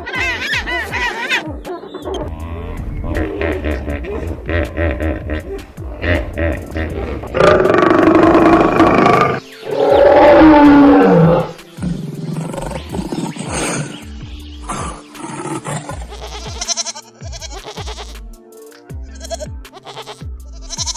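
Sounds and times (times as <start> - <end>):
background music with low beat: 0.0 - 20.9
large animal roaring: 5.9 - 14.0.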